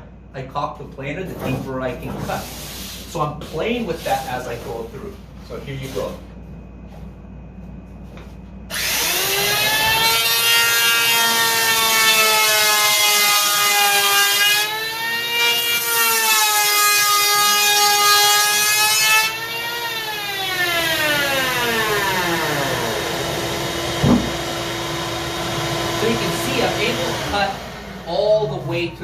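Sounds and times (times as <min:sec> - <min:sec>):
electric hand planer whining: 0:08.7 - 0:28.4.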